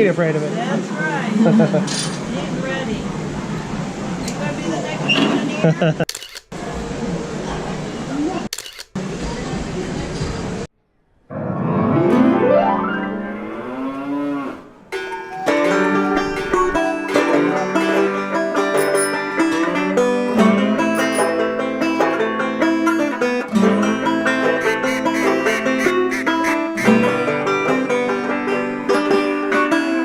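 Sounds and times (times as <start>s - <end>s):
plucked string music: 15.0s - 30.0s.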